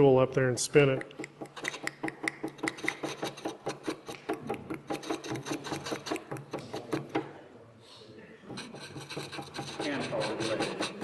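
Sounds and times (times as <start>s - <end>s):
tool scraping spinning wood: 0.8s - 7.3s, 8.5s - 11.0s
wood lathe running: 8.6s - 11.0s.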